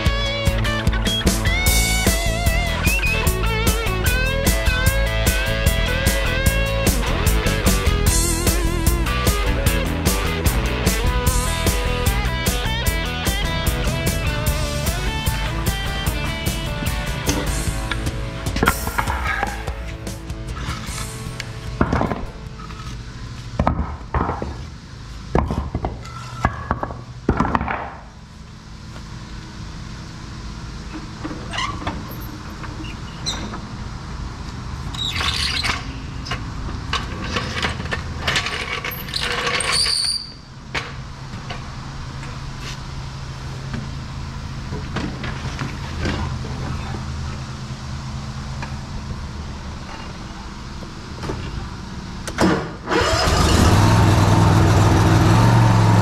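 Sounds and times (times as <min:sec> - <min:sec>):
lawn mower engine idling: 0:00.0 - 0:22.1, 0:52.8 - 0:56.0
clanks and knocks: 0:21.8 - 0:22.8, 0:23.6 - 0:24.6.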